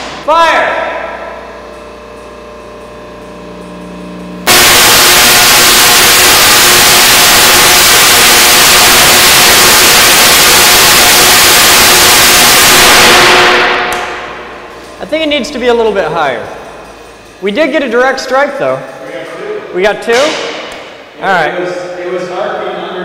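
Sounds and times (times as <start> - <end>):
low hum: 0.9 - 18.1
tesla coil spark discharge: 4.4 - 15.7.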